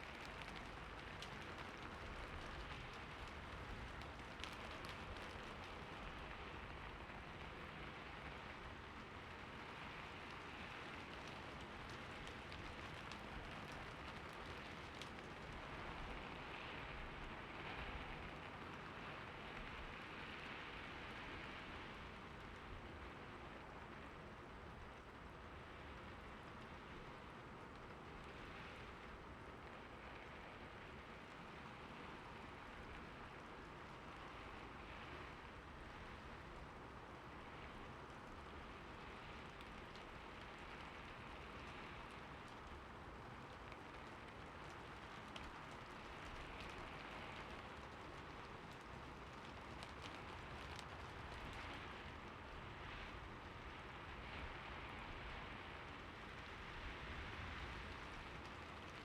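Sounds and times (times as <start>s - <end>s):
raindrops ticking: 0.0s - 7.0s, 10.3s - 16.2s, 37.4s - 52.6s.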